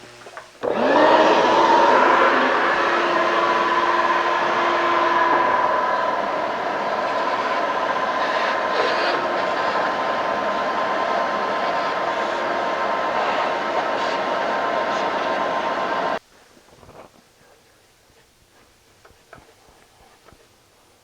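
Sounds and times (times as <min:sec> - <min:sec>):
air blow gun hissing: 0:00.0 - 0:16.2.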